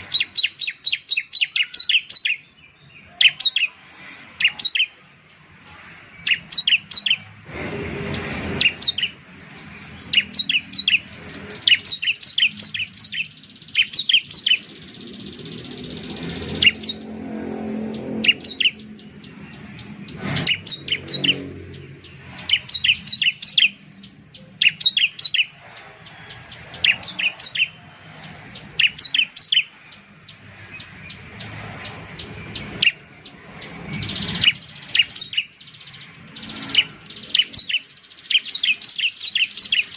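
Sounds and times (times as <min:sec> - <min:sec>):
bird singing high-pitched phrases: 0:00.0 - 0:05.4, 0:06.0 - 0:07.3, 0:08.6 - 0:39.9.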